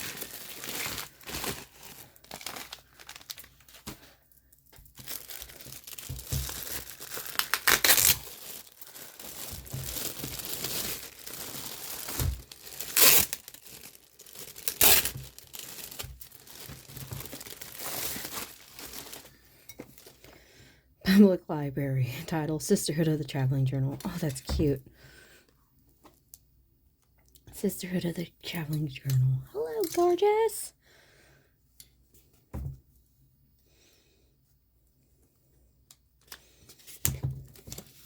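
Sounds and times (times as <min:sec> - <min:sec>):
wrapping rustling and ripping: 0:00.0 - 0:20.3.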